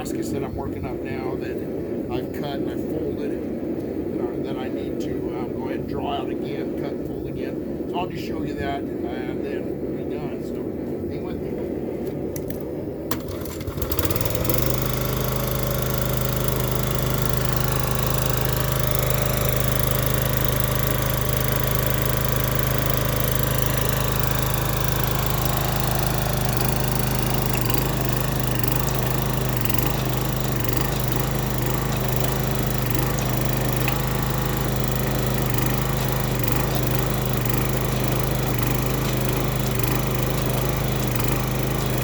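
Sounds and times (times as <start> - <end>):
small engine running steadily: 12.4 - 42.0.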